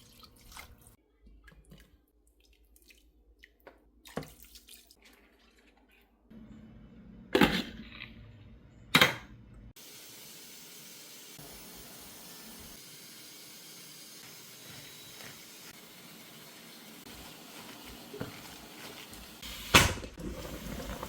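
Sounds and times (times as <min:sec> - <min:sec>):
pot boiling hiss: 0:09.8 - 0:21.0.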